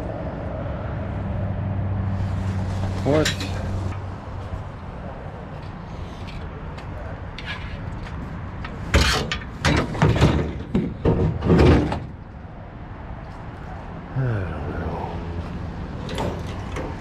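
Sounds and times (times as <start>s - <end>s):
scrap metal rattling and clattering: 2.2s - 4.1s.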